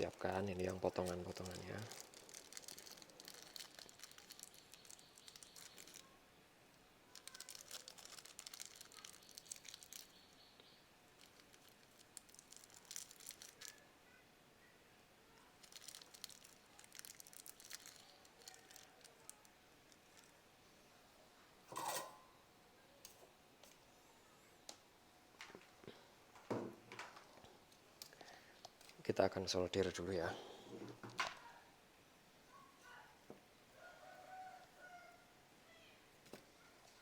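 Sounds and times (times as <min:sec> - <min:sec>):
small parts rustling and crinkling: 0:00.0 - 0:06.1, 0:07.1 - 0:10.4, 0:11.2 - 0:13.8, 0:15.4 - 0:20.4.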